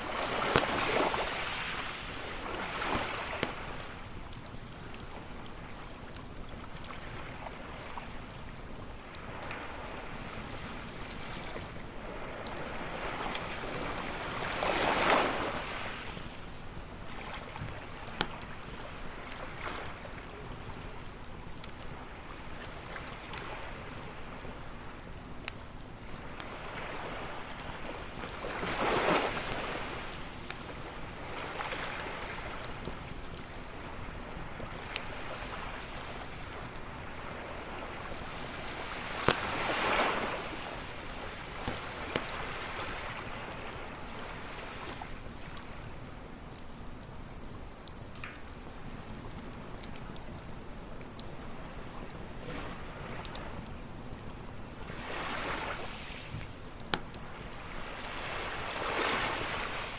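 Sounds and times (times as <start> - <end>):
ocean waves breaking: 0.0 - 4.1, 9.2 - 16.5, 26.3 - 32.8, 33.6 - 45.5, 54.9 - 56.4, 57.4 - 59.9
campfire crackling and popping: 0.0 - 59.9
constant hiss: 0.0 - 59.9.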